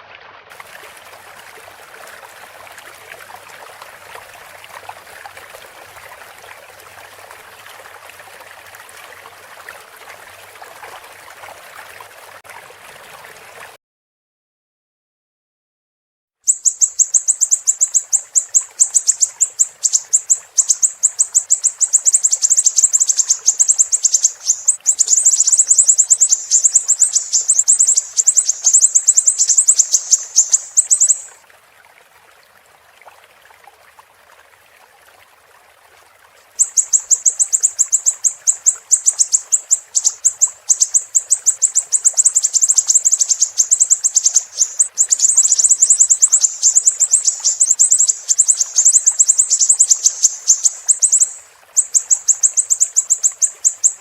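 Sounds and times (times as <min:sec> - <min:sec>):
running water hiss: 0:00.5 - 0:13.8, 0:16.5 - 0:54.0
bird singing sharp chirps: 0:16.5 - 0:31.3, 0:36.6 - 0:54.0.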